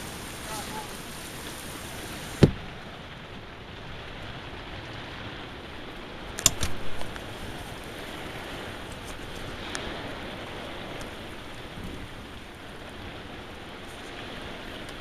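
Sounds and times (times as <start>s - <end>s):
heavy rain and wind: 0.0s - 15.0s
knocks: 2.4s - 2.6s
sharp thump: 2.4s - 2.6s.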